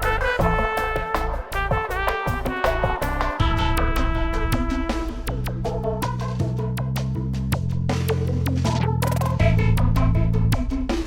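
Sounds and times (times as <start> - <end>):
drum hits: 0.0 - 6.4
synthesizer bass and chords: 0.0 - 11.0.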